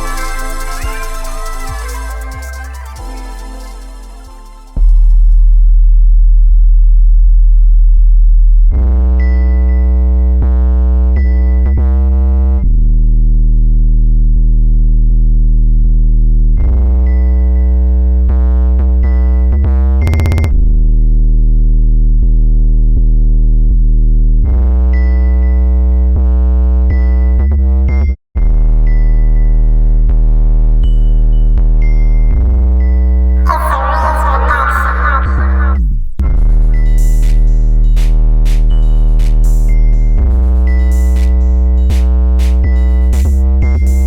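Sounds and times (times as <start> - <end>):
synthesizer chords: 0.0 - 5.4, 33.4 - 35.8
heavy bass: 0.0 - 17.0, 33.4 - 36.0.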